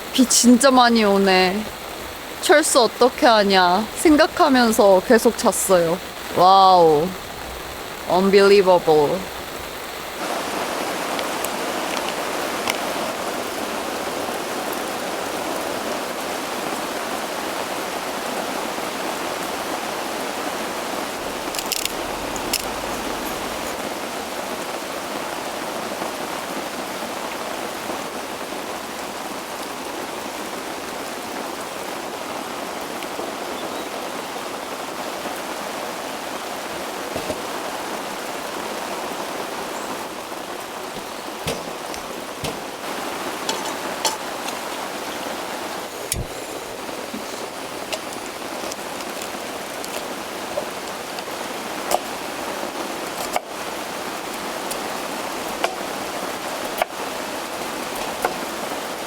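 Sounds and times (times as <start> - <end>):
heavy rain hissing: 0.0 - 59.0
sharp drop taps: 41.0 - 42.9.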